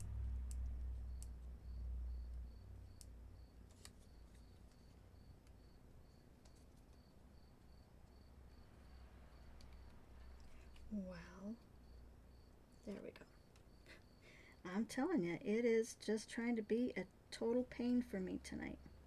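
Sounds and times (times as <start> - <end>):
low handling rumble: 0.0 - 2.5.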